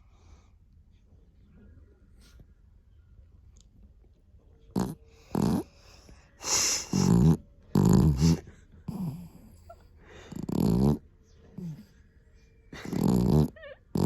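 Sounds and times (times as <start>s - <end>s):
dog snoring: 4.7s - 11.9s, 12.8s - 14.0s.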